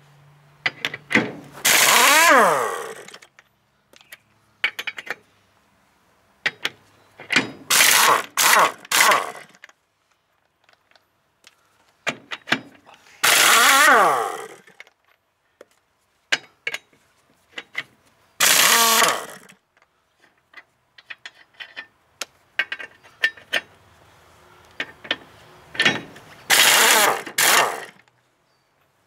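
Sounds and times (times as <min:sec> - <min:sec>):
metal clicks and knocks: 0:00.6 - 0:01.4, 0:03.1 - 0:05.2, 0:06.4 - 0:07.7, 0:12.0 - 0:12.9, 0:19.8 - 0:23.8, 0:24.7 - 0:26.4
impact wrench hammering: 0:01.7 - 0:02.4, 0:18.4 - 0:19.4, 0:25.8 - 0:27.9.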